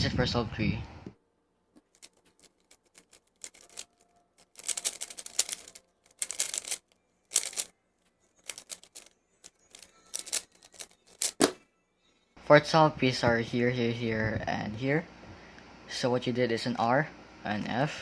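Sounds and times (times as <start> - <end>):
plastic puzzle cube clicking: 1.8 - 7.7, 8.4 - 11.4.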